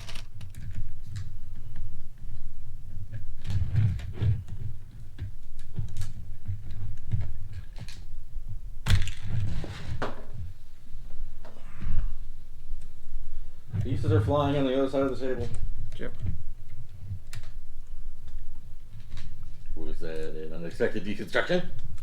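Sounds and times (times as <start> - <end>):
plastic pieces clattering: 0.0 - 0.9
plastic bricks clicking and rattling: 0.0 - 1.4.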